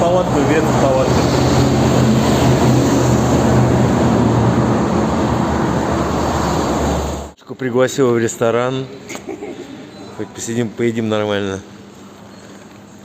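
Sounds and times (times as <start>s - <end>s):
wind and road noise: 0.0s - 7.4s.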